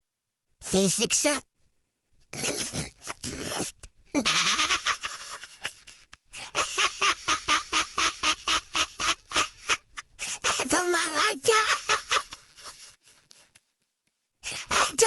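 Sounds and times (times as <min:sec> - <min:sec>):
cartoonish cackling laugh: 0:04.2 - 0:10.1, 0:11.5 - 0:12.9.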